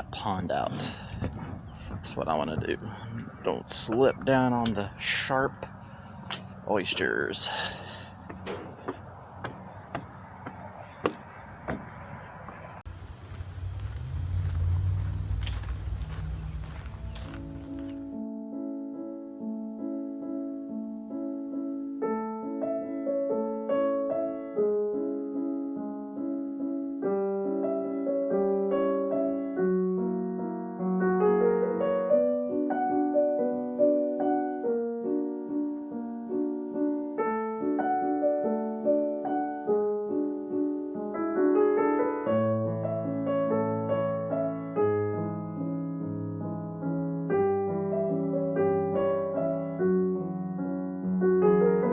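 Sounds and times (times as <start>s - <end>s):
gentle solo piano piece: 27.0s - 51.9s.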